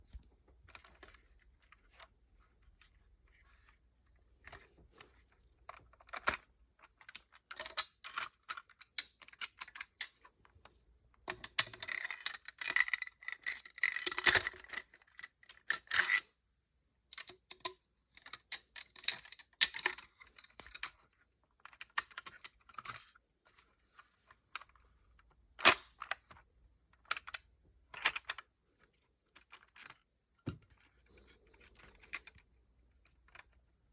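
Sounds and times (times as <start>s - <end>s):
plastic bricks clicking and rattling: 11.2s - 16.3s.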